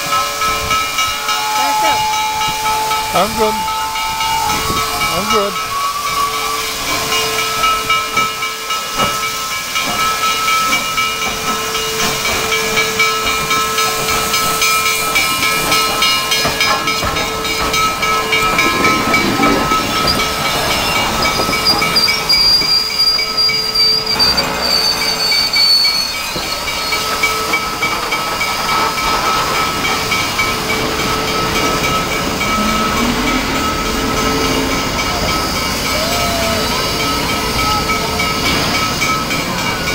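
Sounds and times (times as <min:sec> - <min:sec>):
steam locomotive chuffing: 0:00.0 - 0:39.9
high squeal gliding downward: 0:00.2 - 0:08.1, 0:15.4 - 0:27.7, 0:30.4 - 0:39.9.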